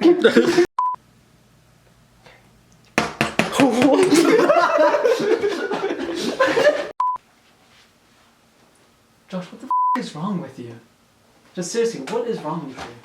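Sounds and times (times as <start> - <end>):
censor bleep tone: 0.8 - 1.0.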